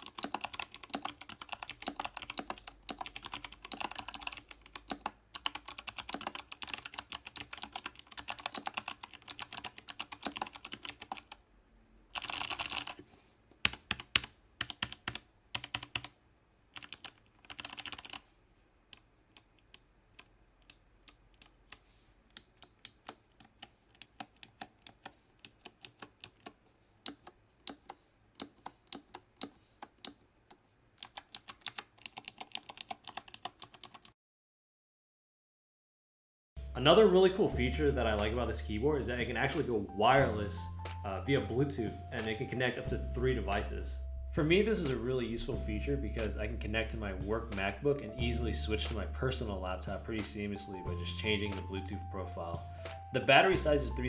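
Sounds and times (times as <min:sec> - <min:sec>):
clicky mechanical keyboard typing: 0:00.0 - 0:11.4, 0:12.2 - 0:13.0, 0:13.6 - 0:16.2, 0:16.8 - 0:18.2, 0:19.0 - 0:30.2, 0:31.0 - 0:34.1.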